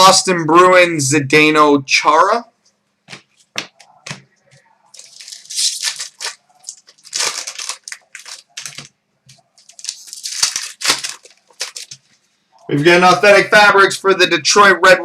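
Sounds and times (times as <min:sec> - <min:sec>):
cards and packaging rustling: 0:04.9 - 0:12.3.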